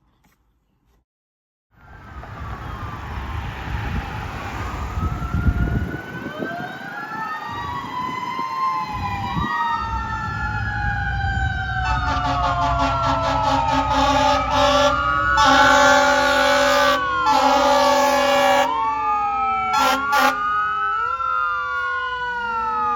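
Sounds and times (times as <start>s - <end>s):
fire engine sirens wailing: 1.8s - 22.9s
truck engine rumble: 1.8s - 22.9s
air horn: 11.8s - 18.7s, 19.7s - 20.5s.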